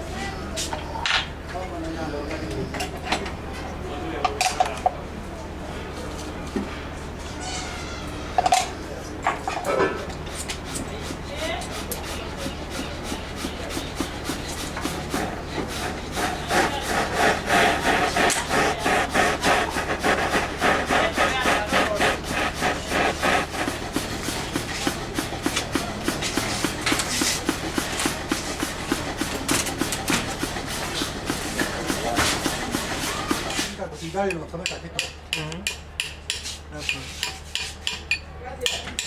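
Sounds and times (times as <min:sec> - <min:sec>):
hand tool scraping metal: 0:10.3 - 0:33.8.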